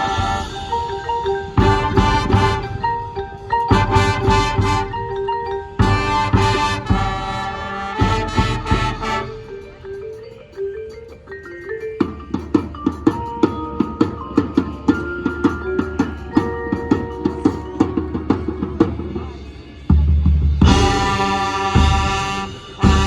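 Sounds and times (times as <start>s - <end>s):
brass and percussion hits: 0.0s - 10.1s, 17.2s - 23.0s
marching band playing: 0.0s - 23.0s
marimba and xylophone: 0.0s - 23.0s.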